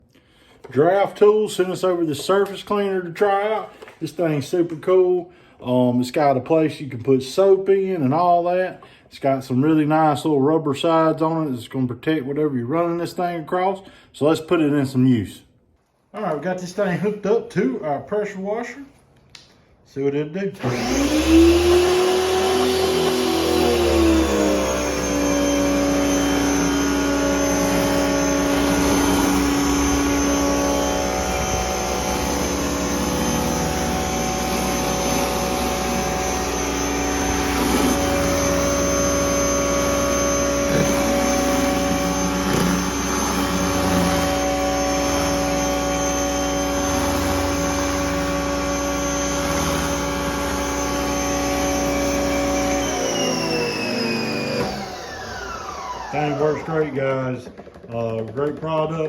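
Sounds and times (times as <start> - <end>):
pressure washer motor: 20.6 - 59.0.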